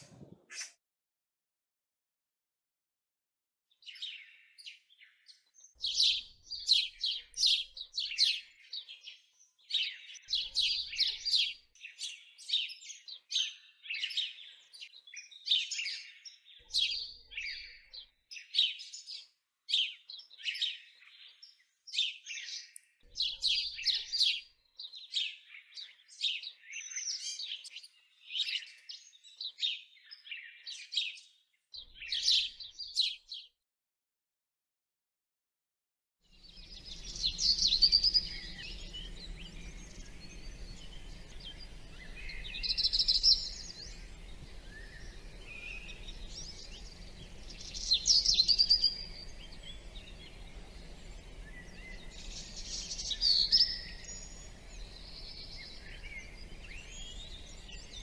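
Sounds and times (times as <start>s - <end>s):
songbirds chirping: 3.7s - 33.5s, 36.3s - 58.0s.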